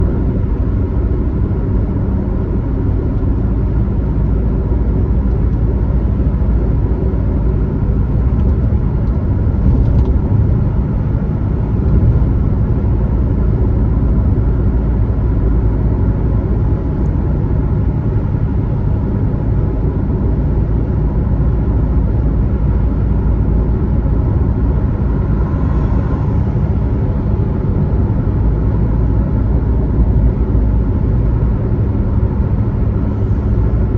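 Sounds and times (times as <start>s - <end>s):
car engine and tyre rumble: 0.0s - 33.9s.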